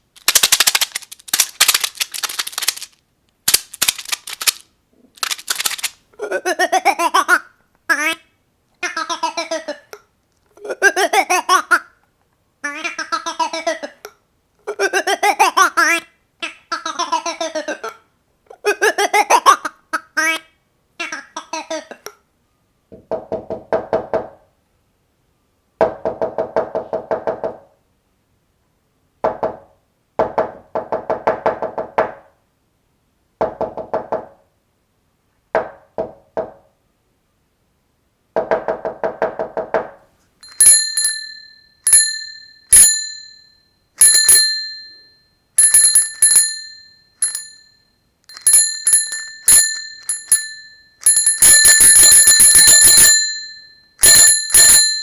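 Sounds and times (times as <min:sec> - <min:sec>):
small metal bell ringing: 0:40.4 - 0:55.0.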